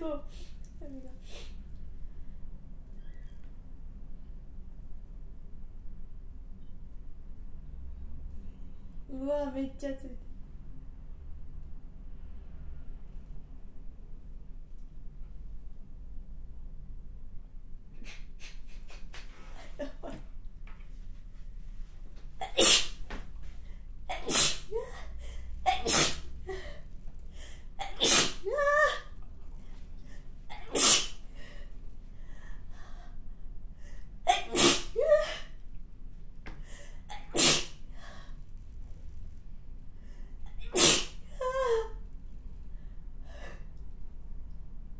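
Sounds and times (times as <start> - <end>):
person sneezing loudly: 22.4 - 23.0, 24.1 - 25.0, 25.7 - 26.3, 27.8 - 29.1, 30.5 - 31.2, 34.3 - 35.5, 37.1 - 37.8, 40.6 - 41.2.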